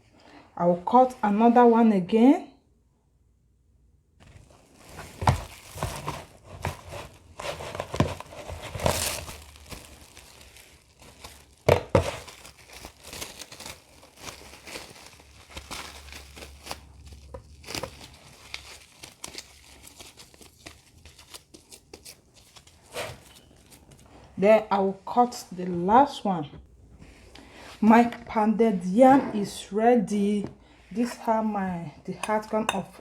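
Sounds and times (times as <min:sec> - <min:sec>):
cling film crinkling and snapping: 0:04.2 - 0:24.1.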